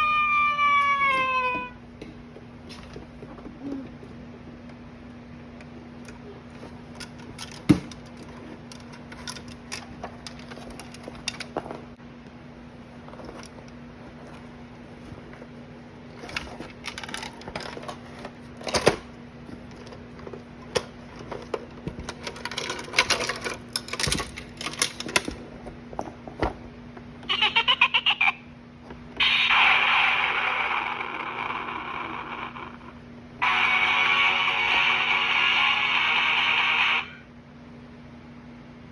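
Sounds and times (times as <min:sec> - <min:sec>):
loud sustained electronic noise: 0:33.4 - 0:37.3.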